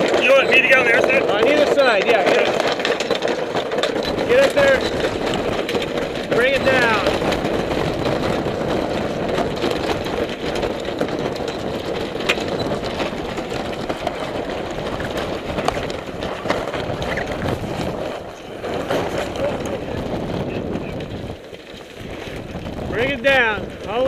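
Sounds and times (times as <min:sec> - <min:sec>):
boat engine running: 0:00.0 - 0:24.0
rigging clicks and rattles: 0:00.0 - 0:24.0
wind buffeting microphone: 0:00.0 - 0:24.0.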